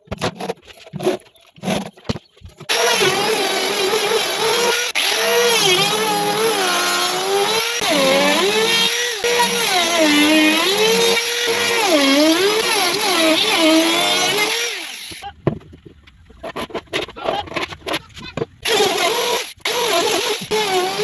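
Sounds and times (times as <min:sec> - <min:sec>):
power tool motor running: 0:02.7 - 0:15.2, 0:18.6 - 0:21.0.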